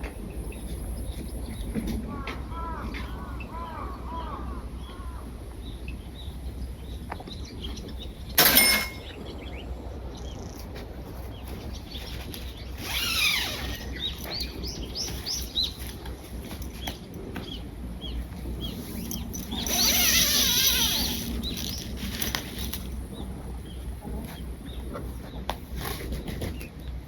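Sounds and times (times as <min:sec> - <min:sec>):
small birds chirping: 0:09.0 - 0:27.0.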